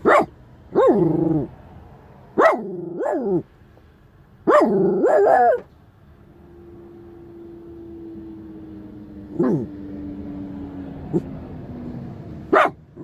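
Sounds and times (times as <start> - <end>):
dog barking: 0.0 - 1.5, 2.4 - 3.4, 4.5 - 5.7, 9.4 - 9.7, 12.5 - 13.0.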